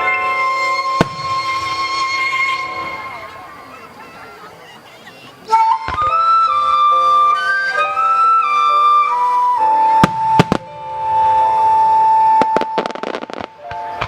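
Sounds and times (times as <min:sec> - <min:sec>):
flute-like melody: 0:00.0 - 0:14.0
firework bangs: 0:00.8 - 0:03.5, 0:09.9 - 0:14.0.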